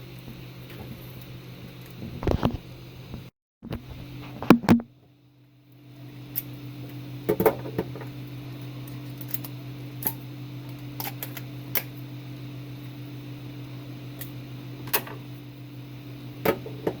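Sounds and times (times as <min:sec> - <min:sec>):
low electrical hum: 0:00.0 - 0:17.0.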